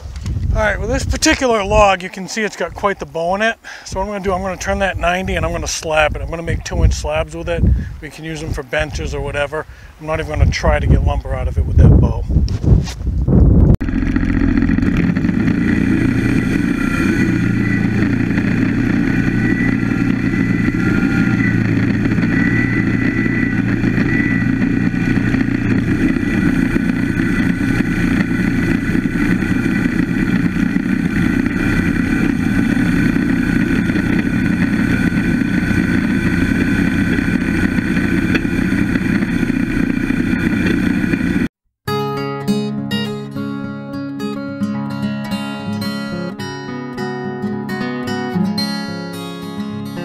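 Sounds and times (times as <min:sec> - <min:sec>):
band sawmill running: 0:13.8 - 0:41.5
faint high whine: 0:13.8 - 0:41.5.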